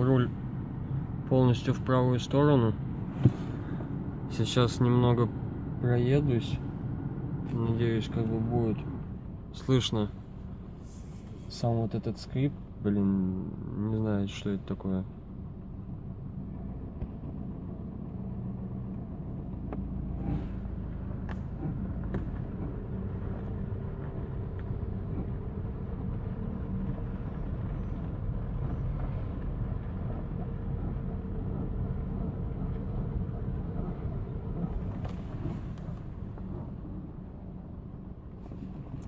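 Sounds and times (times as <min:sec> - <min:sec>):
car running rumble: 0:00.0 - 0:39.0.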